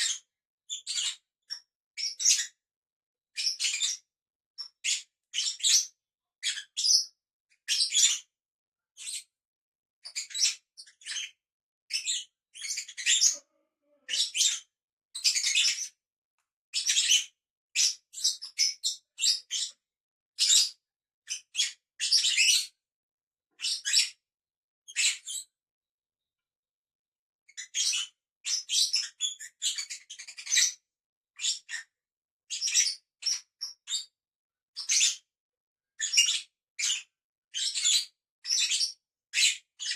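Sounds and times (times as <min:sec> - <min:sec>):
lovebirds chirping: 0:12.0 - 0:14.6.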